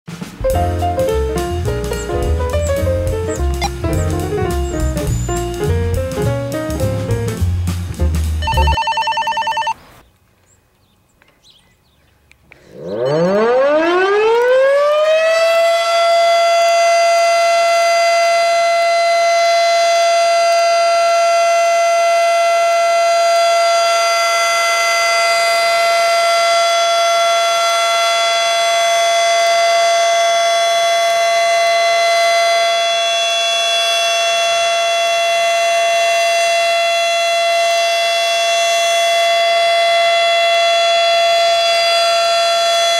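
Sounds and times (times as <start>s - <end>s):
warning siren winding up: 12.7s - 42.9s.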